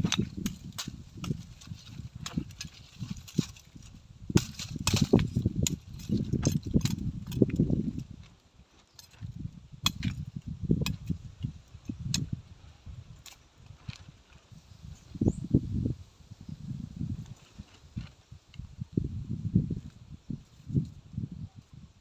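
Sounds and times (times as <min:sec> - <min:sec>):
wind buffeting microphone: 0:00.0 - 0:08.4, 0:09.1 - 0:22.0.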